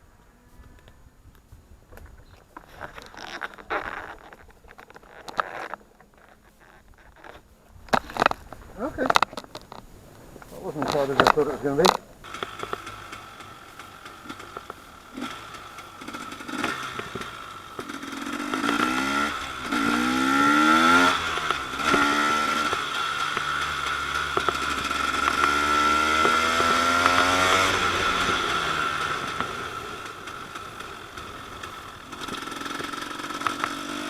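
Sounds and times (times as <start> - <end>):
two-stroke engine revving: 10.8 - 34.0.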